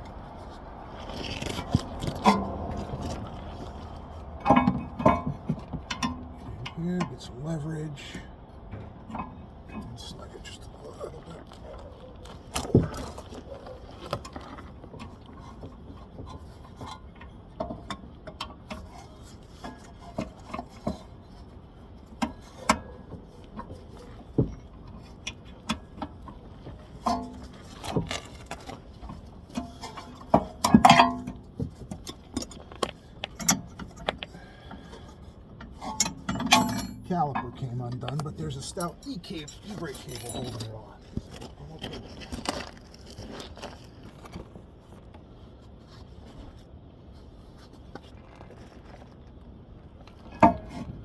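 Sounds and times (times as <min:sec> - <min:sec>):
metal clanks: 0:01.4 - 0:07.3, 0:22.2 - 0:42.0
metallic clicks and clinks of tools: 0:37.9 - 0:41.0.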